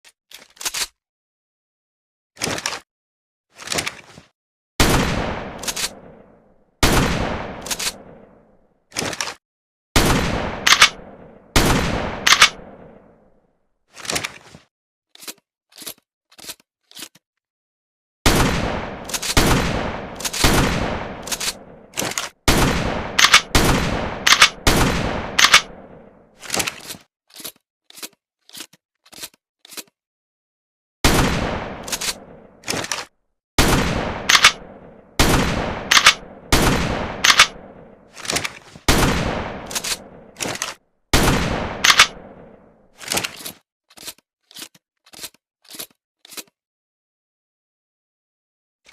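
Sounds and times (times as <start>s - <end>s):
shotgun blasts: 4.8s - 8.4s, 10.0s - 13.0s, 18.3s - 26.2s, 31.0s - 32.8s, 33.6s - 38.0s, 38.9s - 40.6s, 41.2s - 42.6s
shotgun pump racking: 10.7s - 11.0s, 12.3s - 12.6s, 23.2s - 23.5s, 24.3s - 24.6s, 25.4s - 25.7s, 34.3s - 34.6s, 35.9s - 36.2s, 37.2s - 37.5s, 39.7s - 40.8s, 41.8s - 42.2s.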